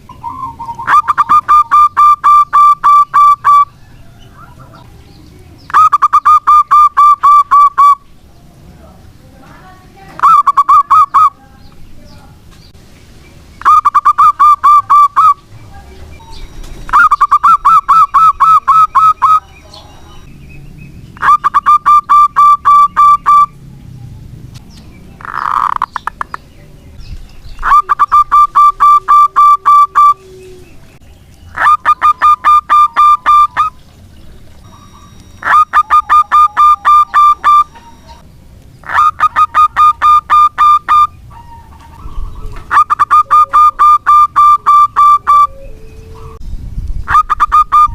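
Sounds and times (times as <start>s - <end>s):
dove cooing: 0.0s - 4.9s, 16.9s - 20.0s, 21.2s - 23.6s, 27.6s - 33.8s, 34.4s - 38.2s, 38.8s - 46.4s.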